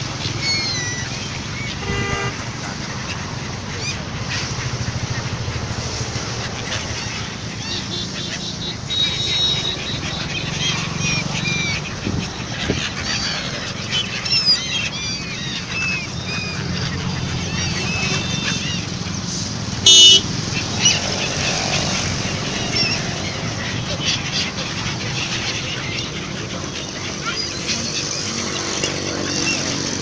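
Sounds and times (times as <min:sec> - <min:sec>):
gulls calling: 0:00.0 - 0:30.0
horn toot: 0:01.8 - 0:02.4, 0:19.8 - 0:20.3.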